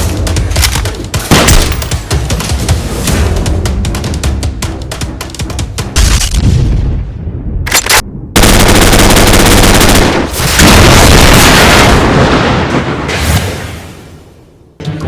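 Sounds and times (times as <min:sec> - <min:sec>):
rapid automatic gunfire: 0:08.4 - 0:12.1.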